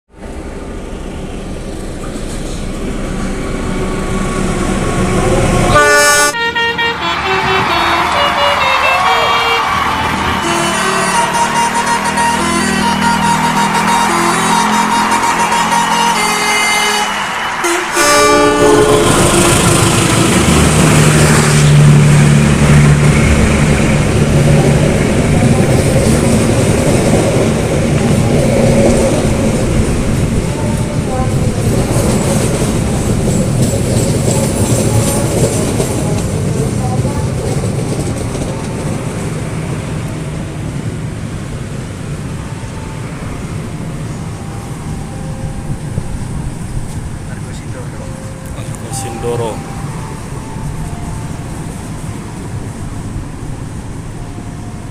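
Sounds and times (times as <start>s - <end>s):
train wheels rumbling on rails: 0.1s - 6.3s, 9.7s - 54.9s
multi-tone musical horn: 5.7s - 21.8s.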